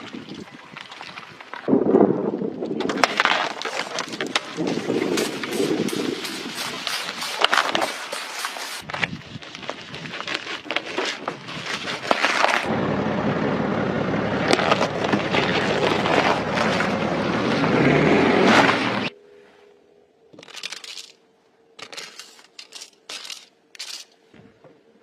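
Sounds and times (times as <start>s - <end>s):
tyres crushing crunchy objects: 2.8s - 12.7s, 14.4s - 19.0s
car engine running low: 12.7s - 19.1s.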